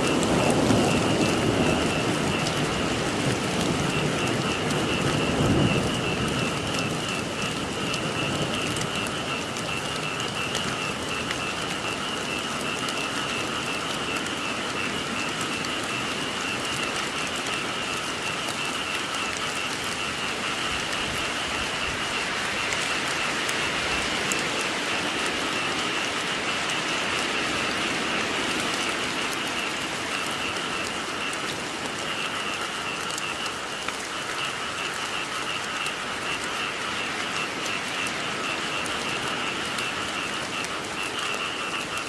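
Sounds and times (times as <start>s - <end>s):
low rumble of thunder: 0.0s - 16.7s
frogs calling: 0.0s - 42.0s
steady rainfall: 0.0s - 42.0s.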